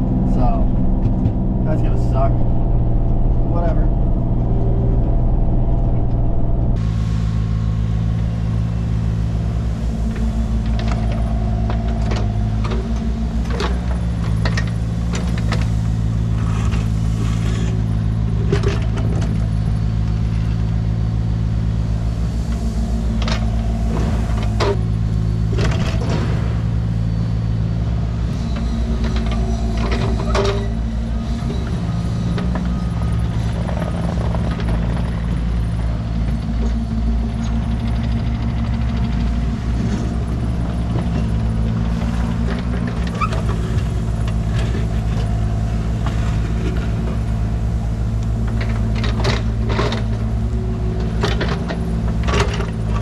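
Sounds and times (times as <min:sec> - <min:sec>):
diesel engine running: 0:00.0 - 0:53.0
knocks and clanks of debris: 0:25.6 - 0:27.0.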